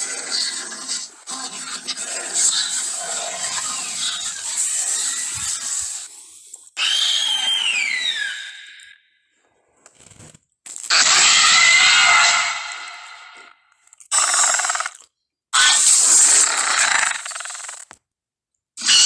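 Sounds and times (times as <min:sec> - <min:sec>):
raspy creature screeches: 0:06.8 - 0:09.0, 0:10.9 - 0:13.4, 0:15.6 - 0:17.4, 0:18.8 - 0:19.0.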